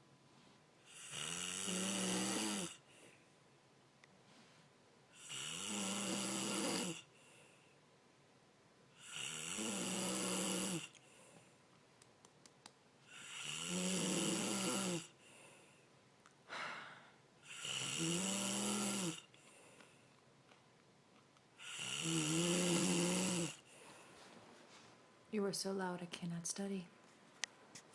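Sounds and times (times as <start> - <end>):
soft breath: 0.2 - 0.8, 2.8 - 3.4, 4.1 - 4.8, 7.1 - 7.9, 11.0 - 11.7, 15.2 - 17.2, 19.3 - 20.2, 23.6 - 25.1
person snoring loudly: 0.9 - 2.8, 5.2 - 7.1, 9.0 - 11.0, 13.1 - 15.2, 17.4 - 19.3, 21.6 - 23.7.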